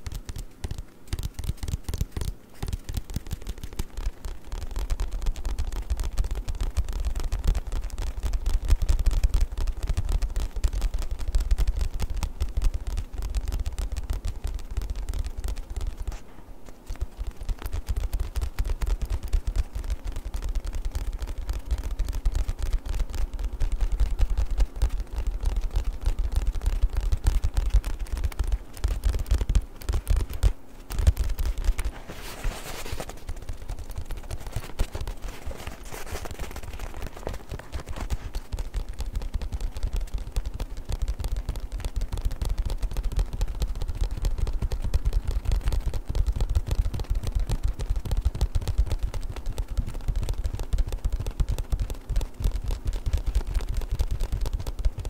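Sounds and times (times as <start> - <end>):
fast tapping on a book: 0.0 - 55.0
soft rustling scratch: 0.0 - 55.0.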